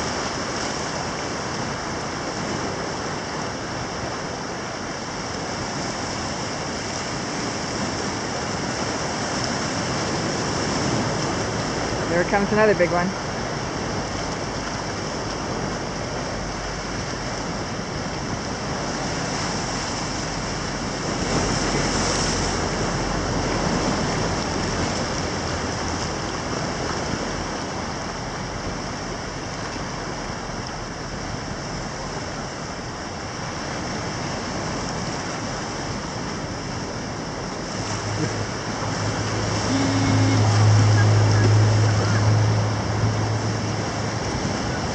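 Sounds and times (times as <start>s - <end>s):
ocean surf washing up beach: 0.0s - 44.9s
low steady hum: 35.4s - 44.9s.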